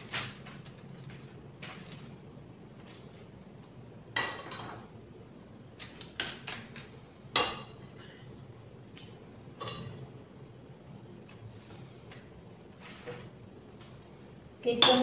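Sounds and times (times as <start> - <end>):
low steady hum: 0.0 - 15.0
dishes and utensils clinking: 9.6 - 10.0.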